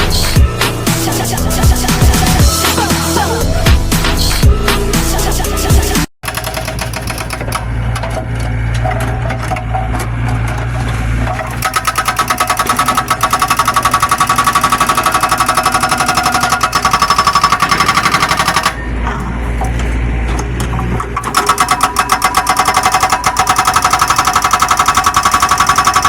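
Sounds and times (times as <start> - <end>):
excavator engine running: 0.0 - 26.0
hydraulic breaker hammering: 6.2 - 26.0.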